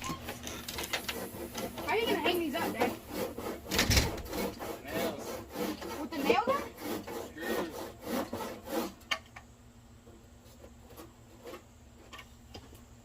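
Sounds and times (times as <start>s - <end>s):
handsaw cutting wood: 0.8s - 9.2s.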